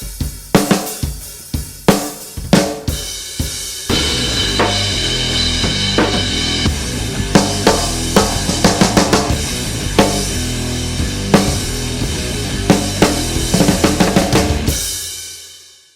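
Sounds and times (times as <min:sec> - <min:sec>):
low bass line: 0:03.9 - 0:14.7
band playing: 0:03.9 - 0:14.8.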